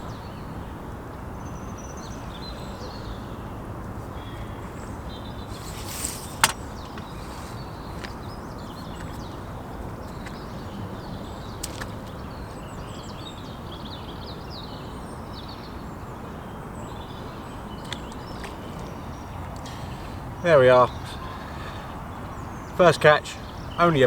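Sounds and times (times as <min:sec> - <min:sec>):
outdoor background noise: 0:00.0 - 0:24.0
sharp click: 0:05.8 - 0:07.1.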